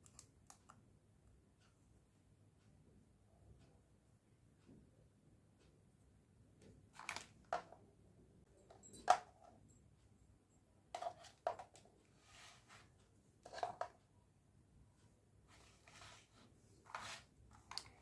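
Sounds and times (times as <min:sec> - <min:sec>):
soft handling rustle: 0:11.0 - 0:14.0, 0:15.4 - 0:18.0
plastic toys clicking and clattering: 0:13.5 - 0:14.0, 0:17.6 - 0:18.0.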